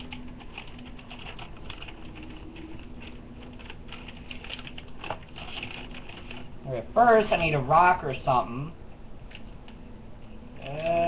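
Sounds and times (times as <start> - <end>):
plastic packaging crackling: 0.0 - 7.7
faint low hum: 0.0 - 11.0.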